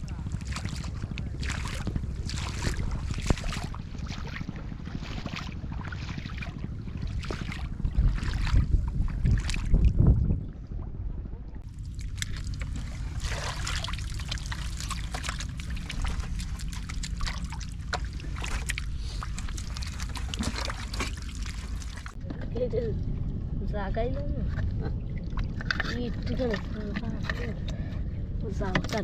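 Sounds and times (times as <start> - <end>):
wind buffeting microphone: 0.0 - 29.0
water splashes and drips: 0.4 - 10.1, 11.6 - 22.2.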